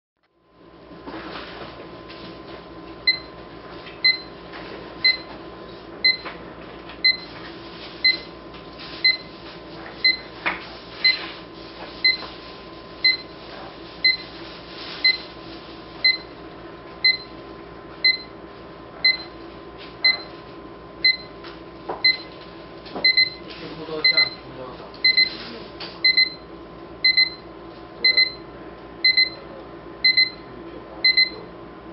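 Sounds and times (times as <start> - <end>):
alarm clock beeping: 5.0 - 5.3, 13.0 - 13.3, 17.0 - 17.3, 18.0 - 18.3, 21.0 - 21.3, 22.0 - 22.3, 23.0 - 23.4, 24.0 - 24.4, 25.0 - 25.4, 26.0 - 27.4, 28.0 - 28.4, 29.0 - 29.4, 30.0 - 30.4, 31.0 - 31.4.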